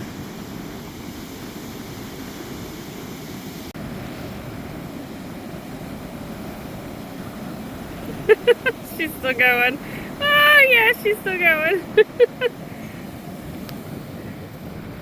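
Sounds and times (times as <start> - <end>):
surf rushing: 0.0 - 15.0
wind buffeting microphone: 4.2 - 15.0.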